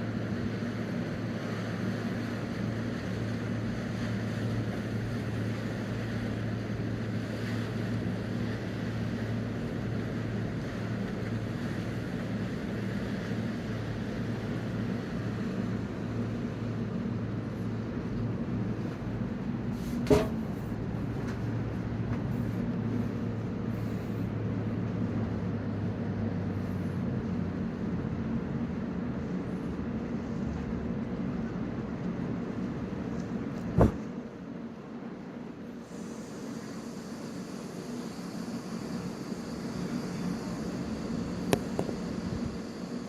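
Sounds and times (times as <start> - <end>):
boat engines humming: 0.0 - 43.0
wind noise: 33.6 - 34.0.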